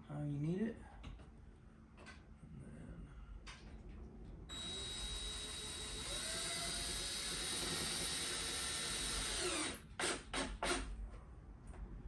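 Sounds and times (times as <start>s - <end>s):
cordless drill whining: 4.5s - 10.8s.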